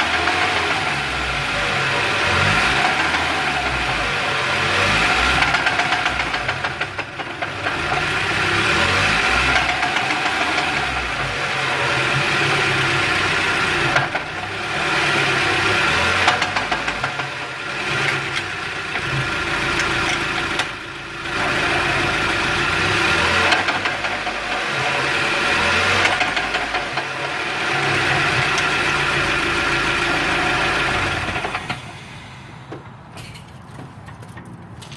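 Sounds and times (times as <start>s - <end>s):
car engine running: 0.0s - 32.9s
drivetrain clunks: 15.4s - 25.0s, 25.8s - 34.9s.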